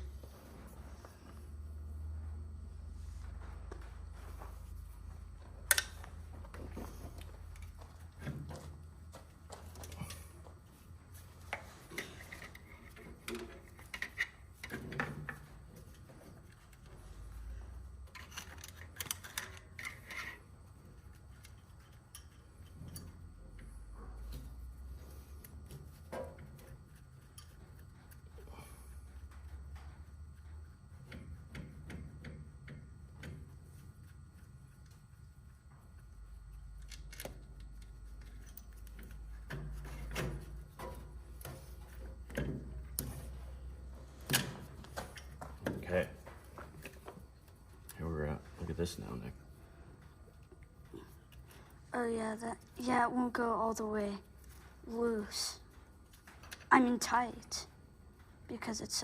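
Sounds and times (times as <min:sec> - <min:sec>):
low steady hum: 0:00.0 - 0:59.0
light clicks and knocks of hand work: 0:05.3 - 0:48.6
tools clicking and clinking: 0:05.7 - 0:06.0, 0:18.1 - 0:20.4.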